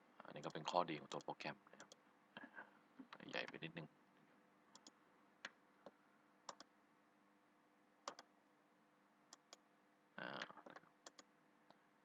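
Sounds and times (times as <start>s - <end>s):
faint steady hum: 0.0s - 12.0s
computer mouse clicking: 0.4s - 2.0s, 4.7s - 6.7s, 8.0s - 8.3s, 9.3s - 9.6s, 10.4s - 11.8s.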